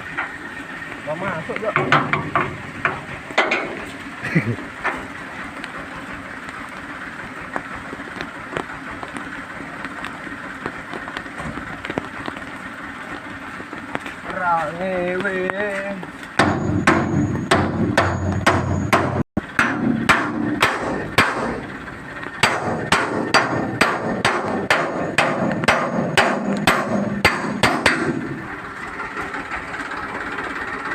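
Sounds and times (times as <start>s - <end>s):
hammer blows: 16.4s - 21.7s, 22.4s - 28.4s.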